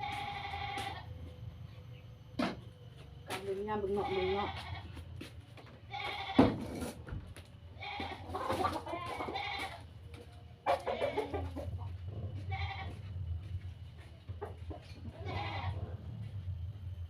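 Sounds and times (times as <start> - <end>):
goats bleating: 0.0 - 1.1, 3.9 - 5.0, 5.9 - 6.4, 7.8 - 9.8, 10.7 - 11.4, 12.4 - 13.0, 15.1 - 15.9.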